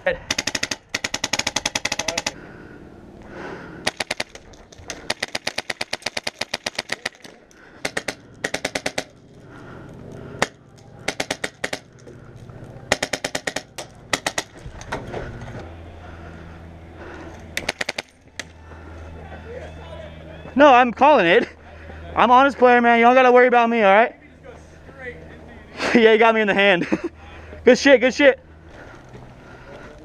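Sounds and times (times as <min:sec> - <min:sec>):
airsoft guns firing bursts: 0:00.2 - 0:02.4, 0:03.8 - 0:09.2, 0:10.4 - 0:12.0, 0:12.9 - 0:14.6, 0:17.6 - 0:18.6.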